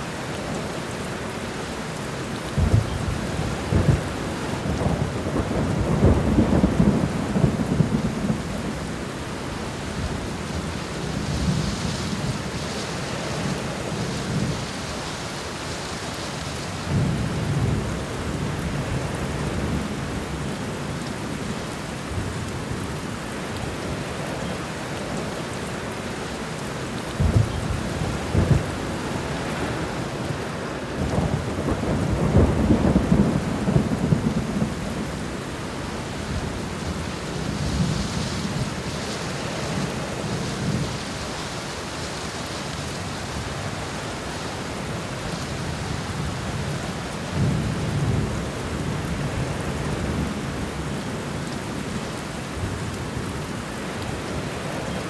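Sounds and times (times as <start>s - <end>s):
steady rain: 0.0s - 55.0s
thunder rumbling: 2.6s - 9.1s, 27.1s - 41.6s.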